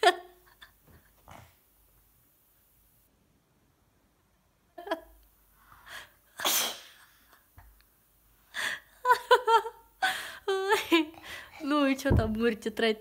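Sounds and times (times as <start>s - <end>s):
child sneezing: 6.4s - 7.1s.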